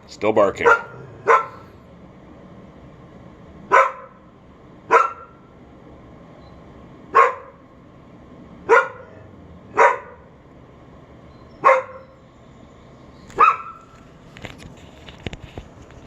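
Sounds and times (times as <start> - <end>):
dog barking: 0.5 - 1.7, 3.7 - 4.2, 4.9 - 5.4, 7.1 - 7.6, 8.6 - 10.3, 11.6 - 12.2, 13.3 - 13.8.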